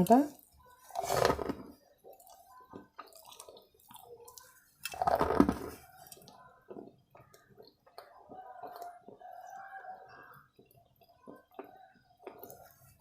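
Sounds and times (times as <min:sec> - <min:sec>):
person chewing wet mouth sounds: 0:01.8 - 0:13.0.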